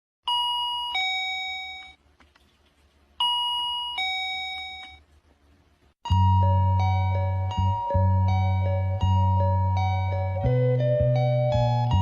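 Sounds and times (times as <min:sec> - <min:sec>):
chime-like tune with bass: 0:00.3 - 0:02.0, 0:03.2 - 0:05.0, 0:06.0 - 0:12.0
two-note door chime: 0:00.3 - 0:02.0, 0:03.2 - 0:05.0, 0:06.0 - 0:12.0.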